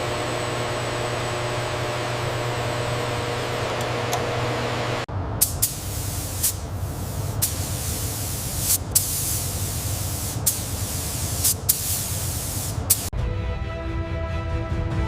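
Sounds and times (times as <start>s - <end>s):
hissing spray: 5.4s - 13.1s
music: 13.1s - 15.0s.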